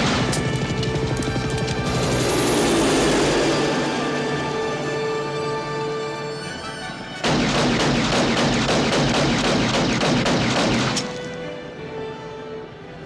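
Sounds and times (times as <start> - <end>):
film score sustained tones: 0.0 - 13.0
automatic gunfire: 7.2 - 11.2.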